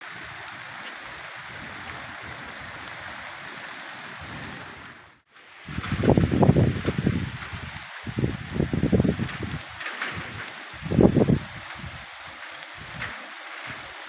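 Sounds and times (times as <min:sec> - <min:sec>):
heavy rain: 0:00.0 - 0:14.0
low rumbling buffeting: 0:04.2 - 0:12.2.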